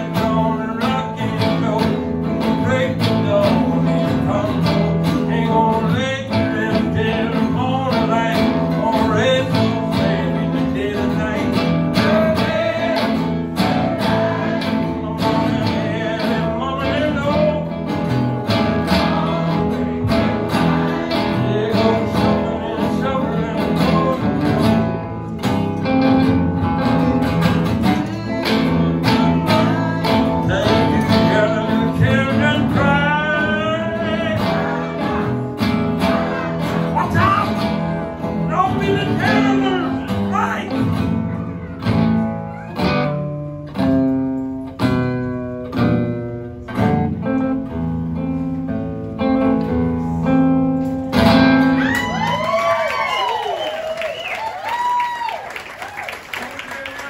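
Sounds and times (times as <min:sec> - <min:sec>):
live blues guitar music: 0:00.0 - 0:55.6
person singing: 0:27.8 - 0:37.6.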